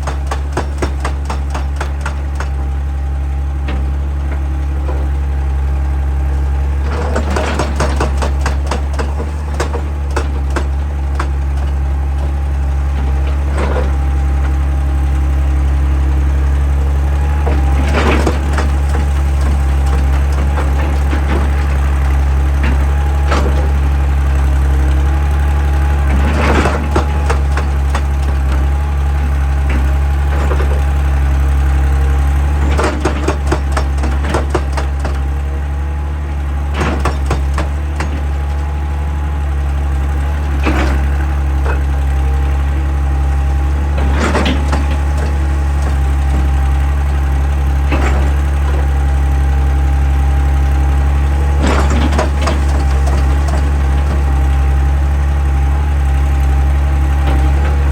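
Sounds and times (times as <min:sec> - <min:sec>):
excavator diesel engine droning: 0:00.0 - 0:57.9
metal knocks and clanks: 0:06.8 - 0:12.4, 0:36.7 - 0:38.7, 0:43.8 - 0:47.1, 0:51.4 - 0:54.3.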